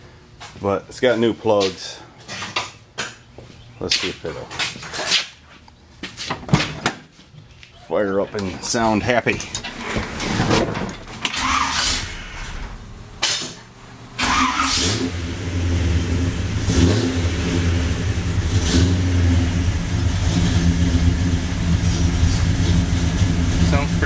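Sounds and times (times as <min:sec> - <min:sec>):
v-eight engine starting and running: 0:11.1 - 0:13.4, 0:14.0 - 0:24.0.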